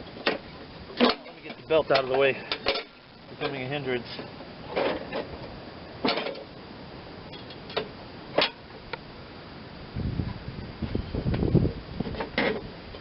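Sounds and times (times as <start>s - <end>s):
metal parts clanking: 1.0s - 3.6s.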